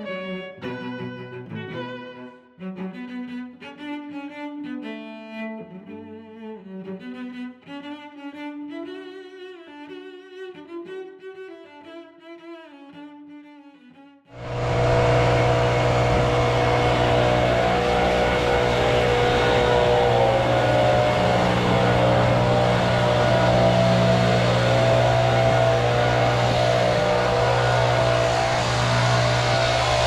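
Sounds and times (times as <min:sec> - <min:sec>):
construction machine engine running: 0:14.4 - 0:30.0.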